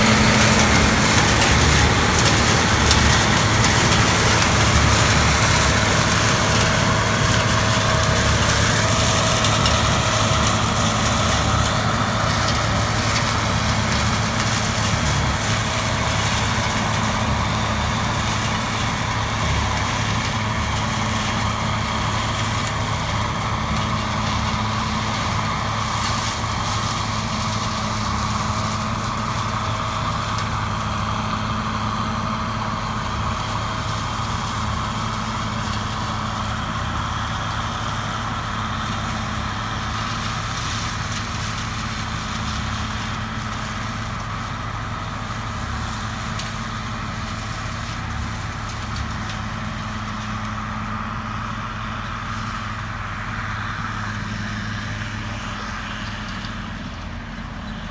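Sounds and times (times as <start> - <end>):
large engine humming: 0.0 - 57.9.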